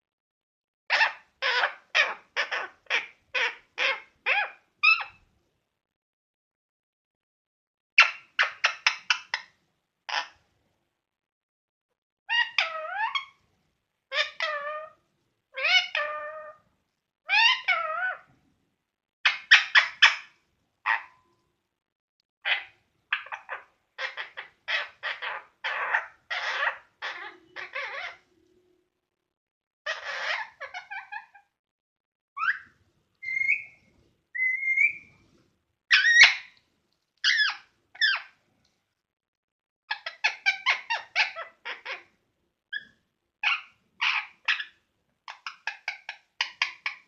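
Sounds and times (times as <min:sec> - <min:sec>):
parrot calling: 0:00.9 - 0:05.2, 0:08.0 - 0:09.5, 0:10.1 - 0:10.4, 0:12.3 - 0:13.4, 0:14.1 - 0:16.6, 0:17.3 - 0:18.3, 0:19.3 - 0:21.3, 0:22.4 - 0:28.2, 0:29.9 - 0:31.5, 0:32.4 - 0:33.8, 0:34.4 - 0:35.1, 0:35.9 - 0:36.6, 0:37.2 - 0:38.4, 0:39.9 - 0:42.1, 0:42.7 - 0:47.0.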